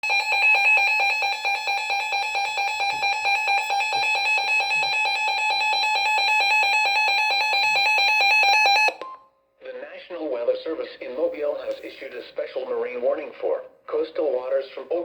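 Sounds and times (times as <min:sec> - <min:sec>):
warbling electronic alert alarm: 0:00.0 - 0:09.0.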